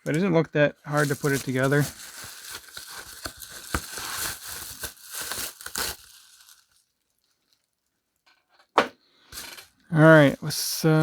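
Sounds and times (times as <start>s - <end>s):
packaging crinkling: 0.9s - 7.9s.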